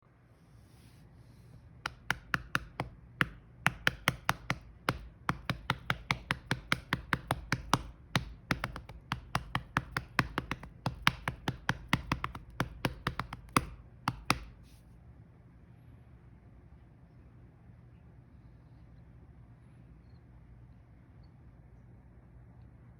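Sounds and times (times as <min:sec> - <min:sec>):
hand patting cat's belly: 0:01.9 - 0:14.8.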